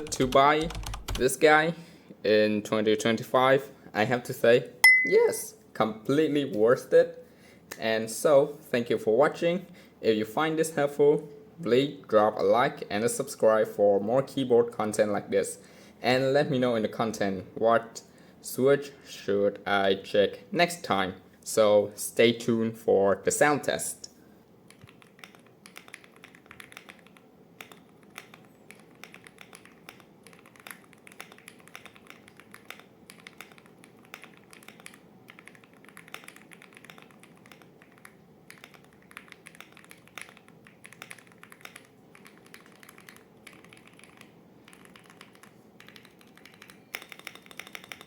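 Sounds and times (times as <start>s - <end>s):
mechanical keyboard typing: 0.0s - 1.3s, 24.7s - 48.0s.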